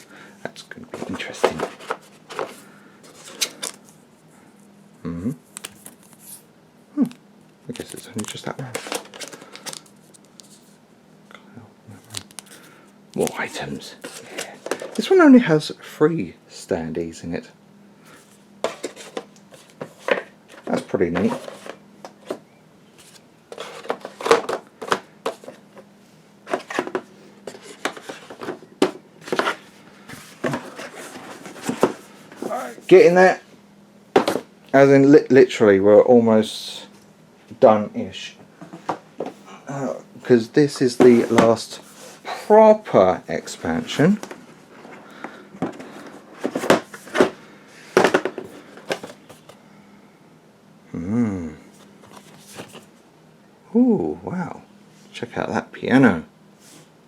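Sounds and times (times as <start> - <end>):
person humming: 5.0 - 5.4, 50.9 - 51.7.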